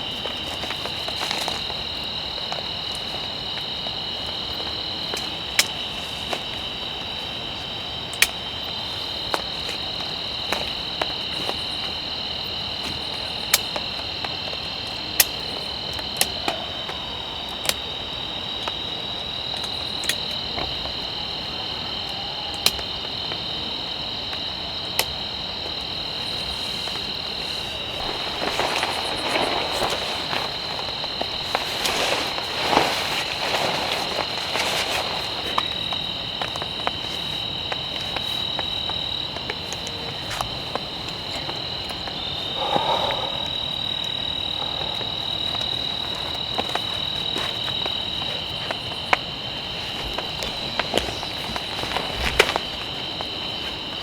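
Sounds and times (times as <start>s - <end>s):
rustle: 0.0s - 12.0s, 26.2s - 54.0s
shrill insect chorus: 0.0s - 54.0s.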